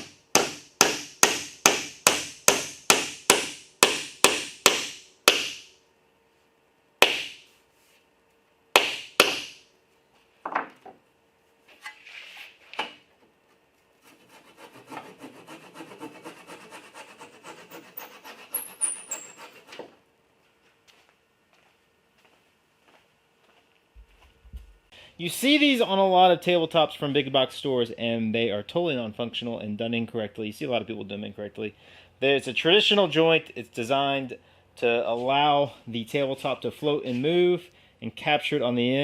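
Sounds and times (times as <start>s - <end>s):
hammer striking wood: 0.0s - 5.7s, 7.0s - 7.4s, 8.7s - 9.6s
scraping on wood: 14.0s - 20.0s.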